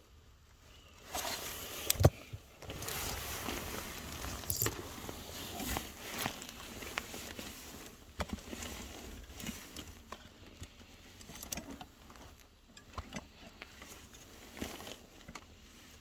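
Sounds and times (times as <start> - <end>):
objects tapping and clicking: 4.4 - 4.8.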